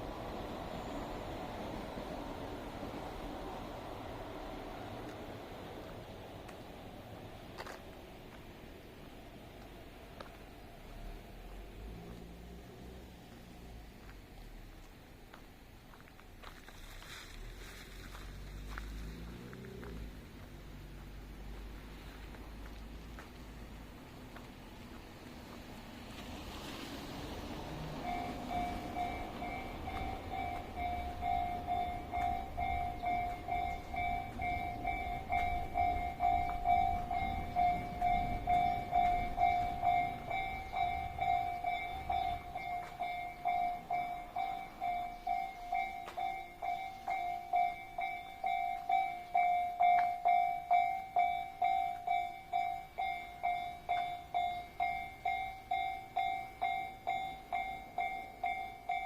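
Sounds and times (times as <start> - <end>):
level crossing alarm ringing: 28.0 - 59.0.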